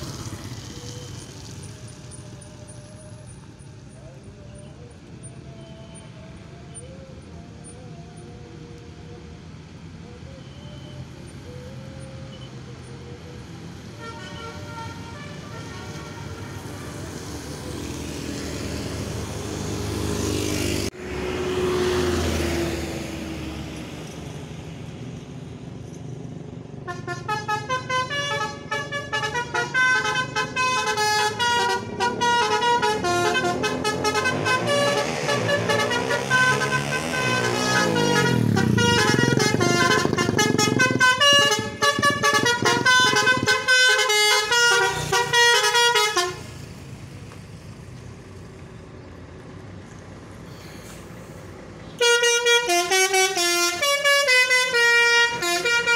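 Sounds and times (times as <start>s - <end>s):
buses passing: 0.0s - 55.9s
musical bus horn: 12.3s - 19.1s, 26.8s - 46.6s, 51.8s - 55.9s.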